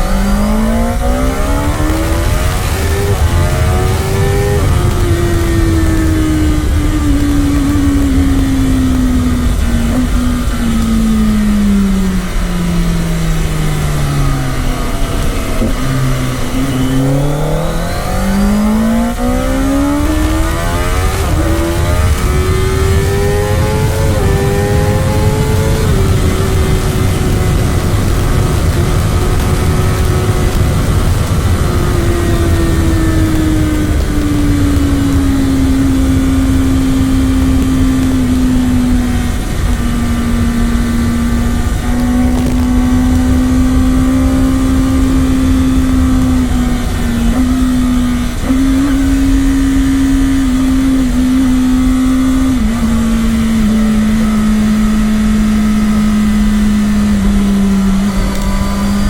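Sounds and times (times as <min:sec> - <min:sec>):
motorcycle engine at high revs: 0:00.0 - 0:59.0.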